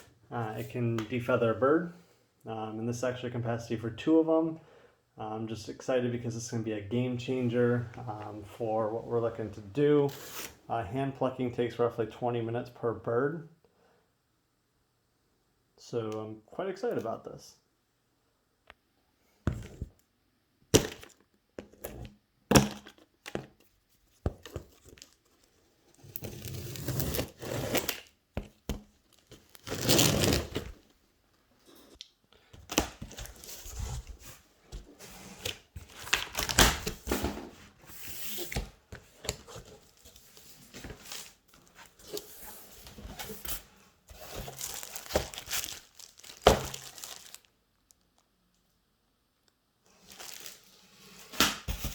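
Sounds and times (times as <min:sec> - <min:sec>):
cardboard tearing and crinkling: 0:26.0 - 0:28.1, 0:29.1 - 0:30.8, 0:35.4 - 0:37.1, 0:44.1 - 0:47.5, 0:50.0 - 0:51.9.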